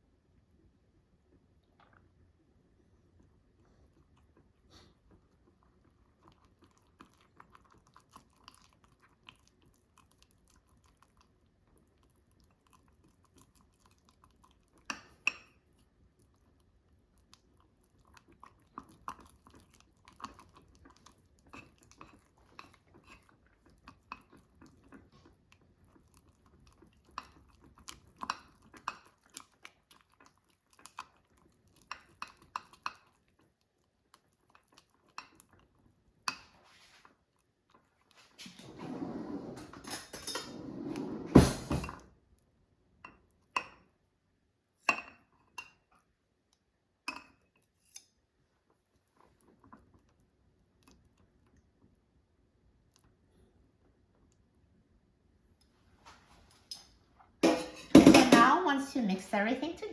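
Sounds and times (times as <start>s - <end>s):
utensil stirring batter in a mug: 5.4s - 37.3s, 44.8s - 46.2s, 47.0s - 48.3s
knocks on mug: 57.9s - 58.4s.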